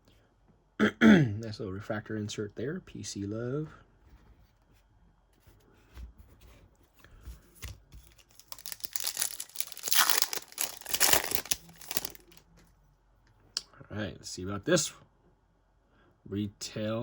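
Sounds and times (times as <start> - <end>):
foil wrapper tearing and crinkling: 8.0 - 12.4.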